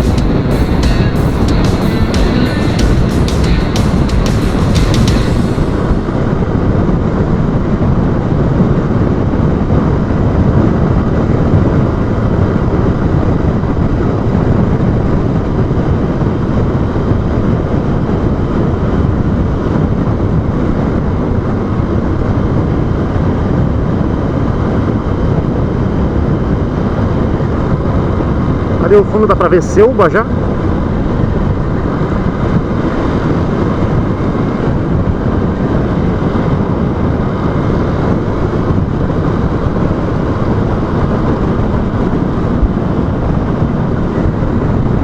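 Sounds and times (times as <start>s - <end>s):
motorcycle engine running: 0.0s - 6.6s
wind rush on microphone: 0.0s - 45.0s.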